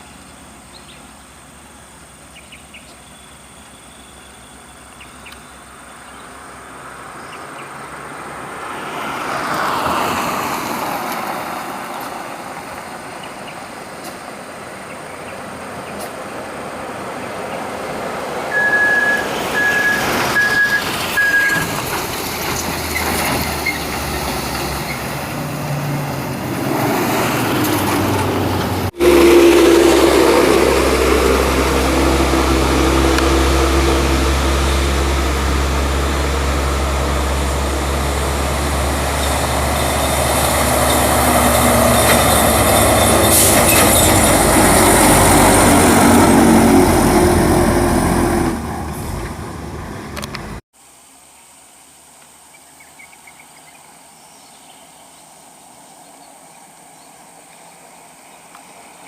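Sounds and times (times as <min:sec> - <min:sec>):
short high beeps: 0:18.5 - 0:21.7
heavy truck engine running: 0:19.4 - 0:50.6.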